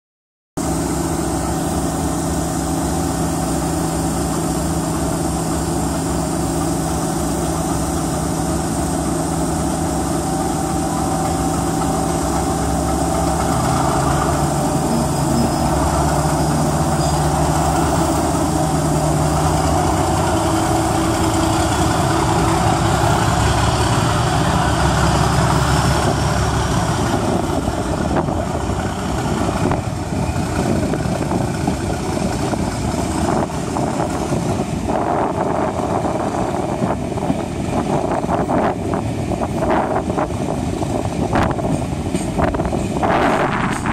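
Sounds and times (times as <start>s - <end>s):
faint high whine rising: 0.6s - 23.6s
diesel locomotive engine running: 0.6s - 43.9s.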